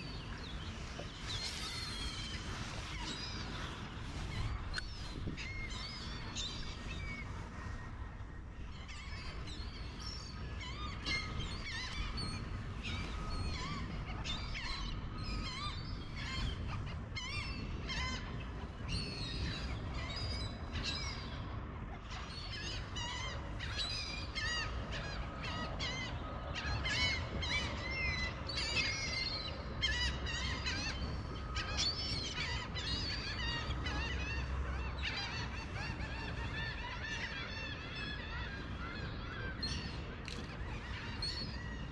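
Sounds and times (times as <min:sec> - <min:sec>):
birds chirping and squealing: 0:22.0 - 0:41.9.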